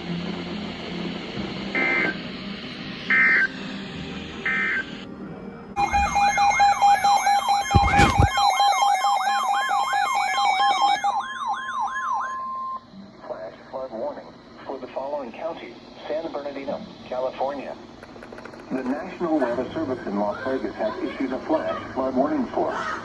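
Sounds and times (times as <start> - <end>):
buzzy data bursts: 5.8 - 9.2
steady tone: 5.8 - 10.3
wailing emergency alert tone: 5.8 - 12.8.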